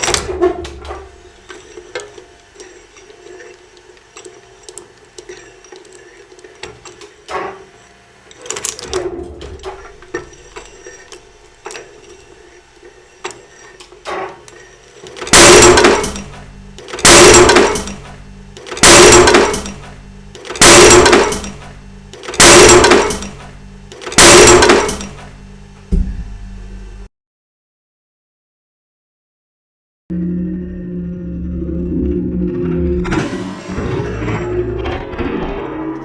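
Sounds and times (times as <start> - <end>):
shredder grinding crashes: 0.0 - 3.6, 8.4 - 12.3, 13.2 - 25.4
shredder motor drone: 30.1 - 36.0.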